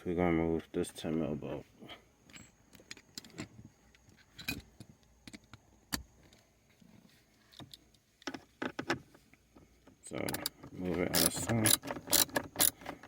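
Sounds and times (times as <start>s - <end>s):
ratchet clicking: 10.3s - 13.0s.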